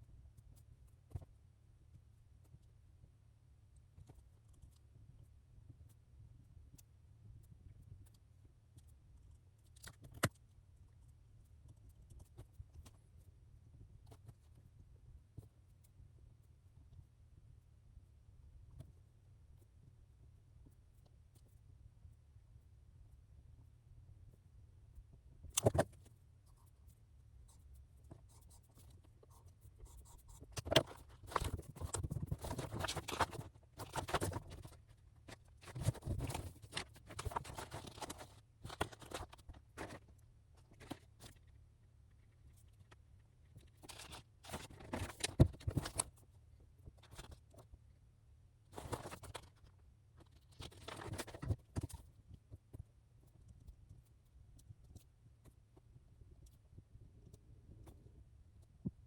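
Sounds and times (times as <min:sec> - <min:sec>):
paper rustling and scratching: 0:28.1 - 0:41.4, 0:43.6 - 0:46.2, 0:48.7 - 0:52.1.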